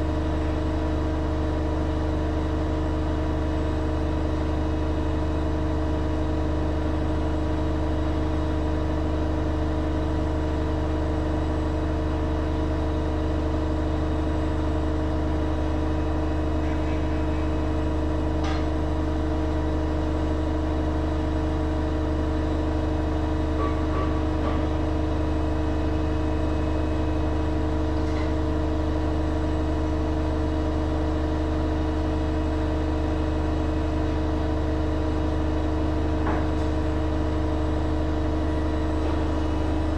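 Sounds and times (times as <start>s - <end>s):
washing machine spinning: 32.0s - 39.9s.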